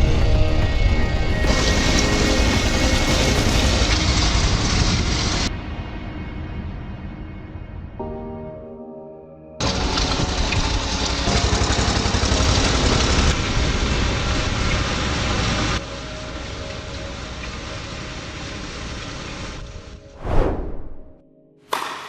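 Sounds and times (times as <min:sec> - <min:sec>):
machinery engine low rumble: 0:09.6 - 0:20.1
brief whoosh: 0:20.1 - 0:21.2.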